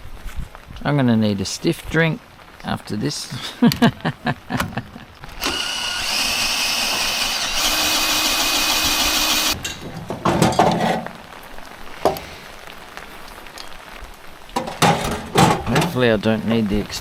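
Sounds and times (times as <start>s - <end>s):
power drill motor running: 5.3s - 9.6s
clunks and knocks: 9.6s - 11.1s, 14.6s - 16.0s.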